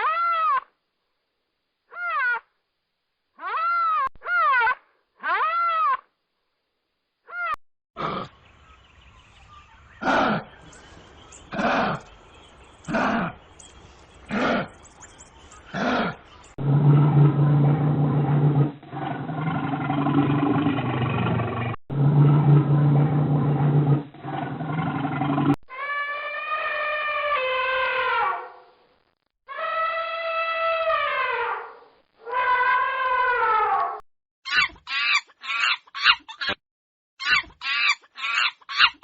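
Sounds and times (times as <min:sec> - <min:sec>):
lion grunting roars: 0:15.7 - 0:25.6
low rumbling growl: 0:16.5 - 0:25.6
falling howl-like animal call: 0:29.5 - 0:34.0.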